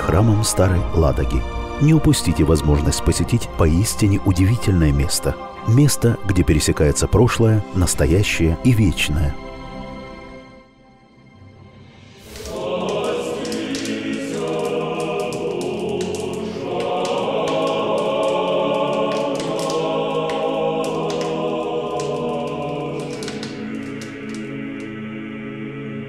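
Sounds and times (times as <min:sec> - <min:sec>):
choir singing sustained chords: 0:09.4 - 0:26.0.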